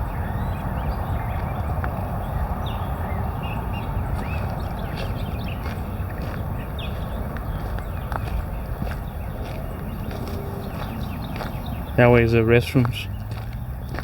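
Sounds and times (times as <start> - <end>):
wind rumbling on microphone: 0.0 - 14.0
high bird chirps: 2.3 - 14.0
footstep-like clicks: 12.8 - 14.0.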